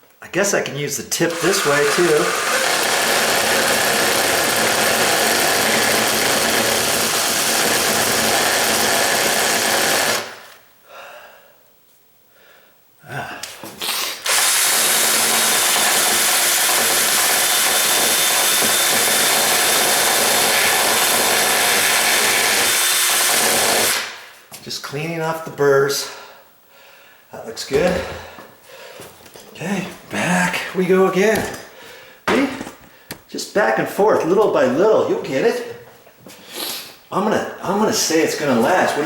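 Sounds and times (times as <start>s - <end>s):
power drill reaming wood: 1.2s - 10.6s, 13.8s - 24.2s.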